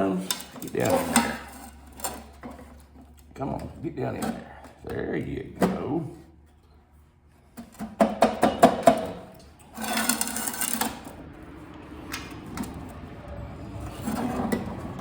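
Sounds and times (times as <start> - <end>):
scraping rustle: 0.0 - 4.8, 9.6 - 11.2.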